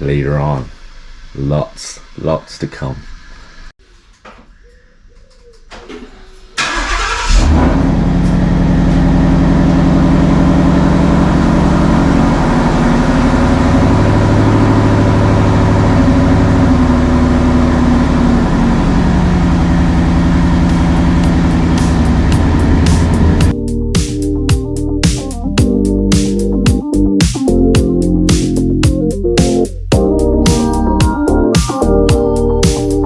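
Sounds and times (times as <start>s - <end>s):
car engine starting and running: 6.6s - 23.6s.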